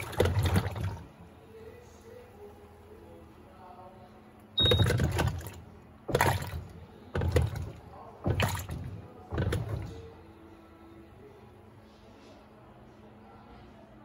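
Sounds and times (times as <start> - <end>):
washing machine churning water: 0.0 - 1.4, 4.6 - 10.3.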